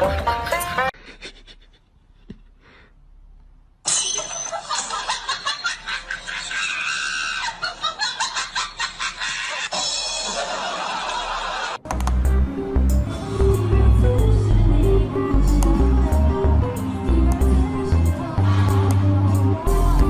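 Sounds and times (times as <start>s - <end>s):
laughter: 1.0s - 2.5s, 4.3s - 11.8s.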